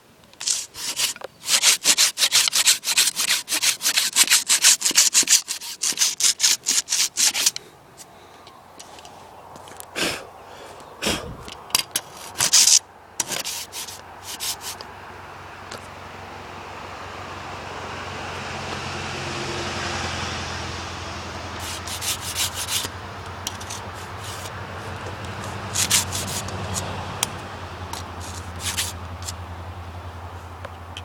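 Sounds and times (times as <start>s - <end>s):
hand saw rasping through wood: 0.4s - 7.6s, 11.0s - 14.8s, 21.5s - 29.4s.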